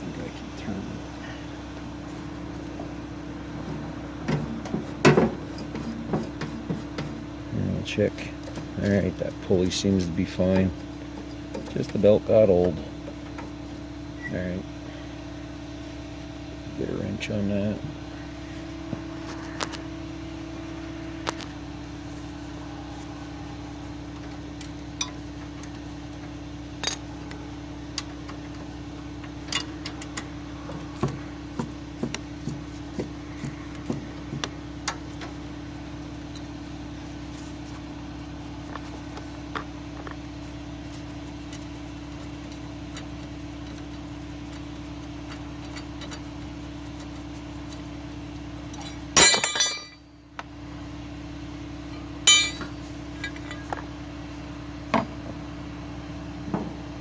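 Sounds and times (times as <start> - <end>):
steady background hum: 0.0 - 57.0
wrench clinking on bolts: 52.3 - 53.7.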